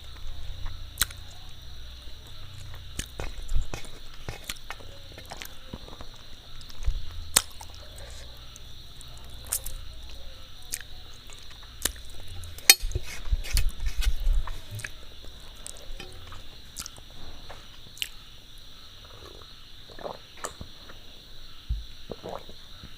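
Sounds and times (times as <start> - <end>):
mouth clicks and smacks chewing: 16.8 - 17.0.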